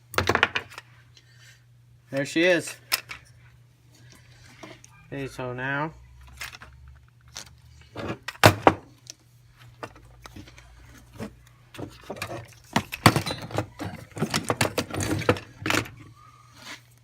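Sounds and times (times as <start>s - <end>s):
metal parts clinking and rattling: 11.2s - 16.0s.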